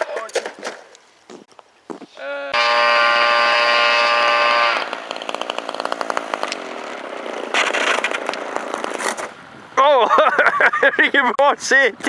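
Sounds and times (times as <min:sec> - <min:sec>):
model airplane engine at high revs: 0:02.6 - 0:06.1.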